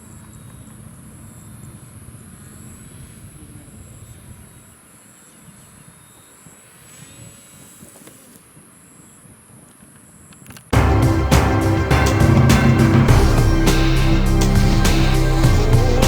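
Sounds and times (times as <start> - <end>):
model airplane motor whine: 5.8 - 8.8.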